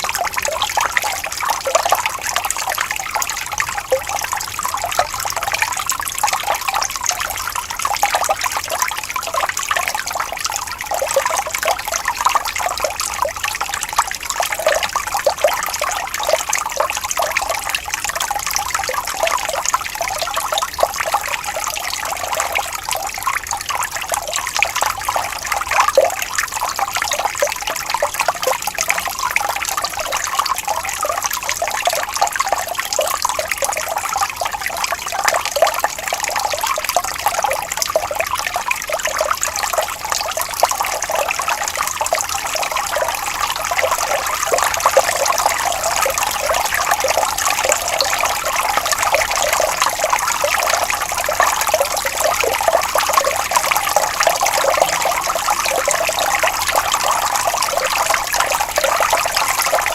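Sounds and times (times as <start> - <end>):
stream trickling over stones: 0.0 - 59.9.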